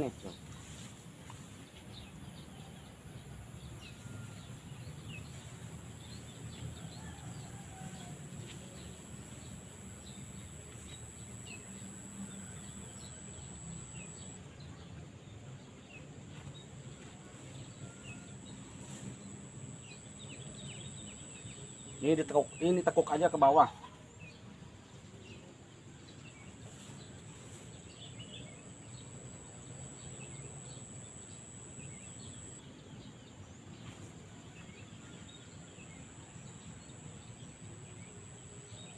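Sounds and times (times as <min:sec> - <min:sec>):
thin high whine: 0:00.0 - 0:14.5, 0:17.2 - 0:24.0, 0:26.7 - 0:32.6
small birds chirping: 0:03.6 - 0:14.9, 0:26.1 - 0:38.9.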